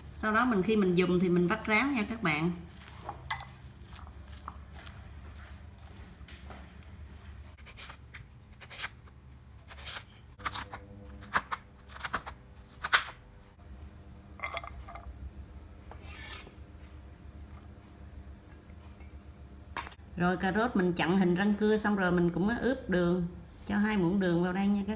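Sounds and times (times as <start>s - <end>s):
utensils scraping a bowl: 15.9s - 16.7s.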